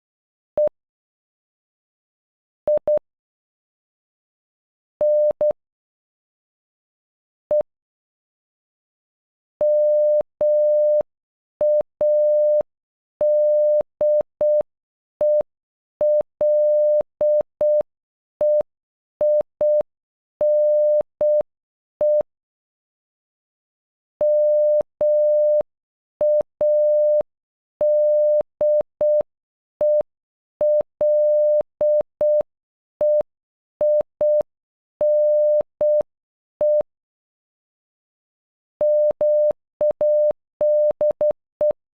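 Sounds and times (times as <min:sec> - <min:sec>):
morse code beeps: 0:09.6 - 0:11.0, 0:11.6 - 0:12.6, 0:13.2 - 0:14.6, 0:20.4 - 0:21.4, 0:24.2 - 0:25.6, 0:26.2 - 0:27.2, 0:27.8 - 0:30.0, 0:30.6 - 0:34.4, 0:35.0 - 0:36.9, 0:38.8 - 0:41.8.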